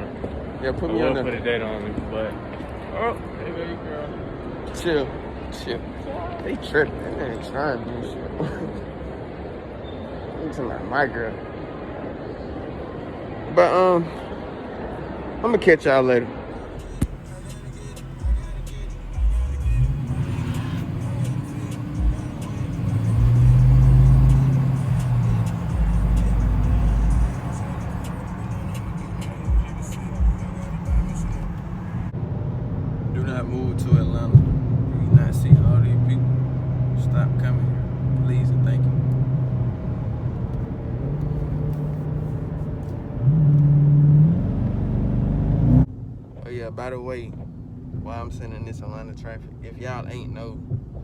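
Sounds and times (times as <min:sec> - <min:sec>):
car engine rumble: 0:16.4 - 0:51.0
music: 0:16.6 - 0:32.0.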